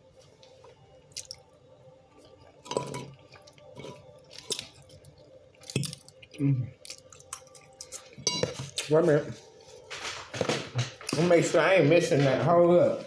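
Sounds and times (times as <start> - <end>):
person chewing salad: 1.1 - 8.9.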